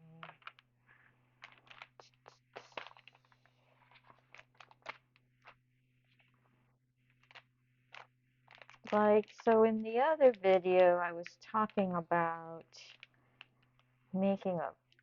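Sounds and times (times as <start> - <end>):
trading cards rustling and clicking: 0.2 - 6.4, 7.0 - 11.8, 12.9 - 13.9.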